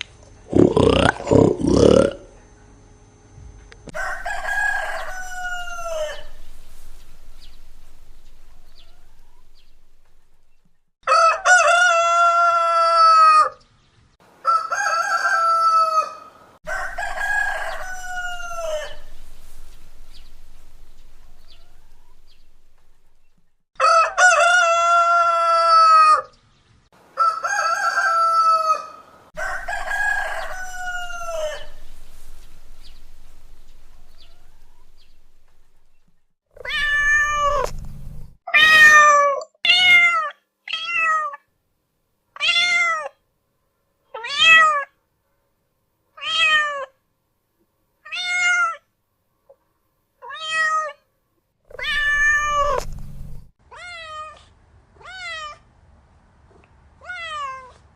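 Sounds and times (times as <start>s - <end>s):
rooster crowing: 3.9s - 13.6s, 14.4s - 26.3s, 27.1s - 38.3s, 51.7s - 53.4s
cat meowing: 36.6s - 41.4s, 42.4s - 43.1s, 51.7s - 55.6s, 57.0s - 57.8s.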